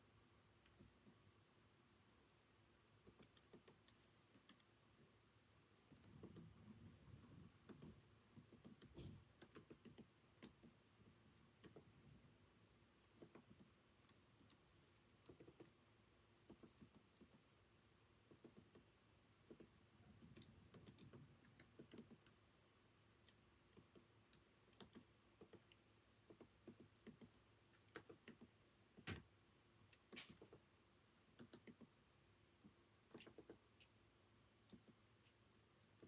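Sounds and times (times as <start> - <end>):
computer keyboard typing: 3.1 - 4.7, 5.9 - 10.7, 11.6 - 11.9, 15.2 - 15.8, 19.5 - 22.4, 23.3 - 29.2, 31.4 - 31.9, 32.6 - 33.6.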